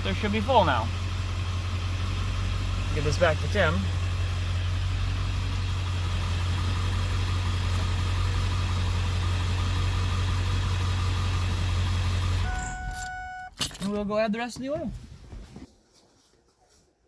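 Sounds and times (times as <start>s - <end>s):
diesel engine idling: 0.0s - 13.0s
steady beep: 12.4s - 13.6s.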